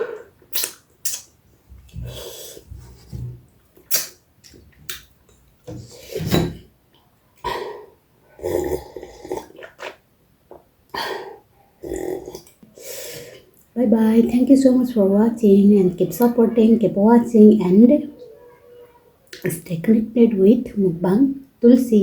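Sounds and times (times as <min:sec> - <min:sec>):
person chewing and smacking: 0:00.5 - 0:01.3, 0:03.8 - 0:05.4, 0:09.4 - 0:10.7.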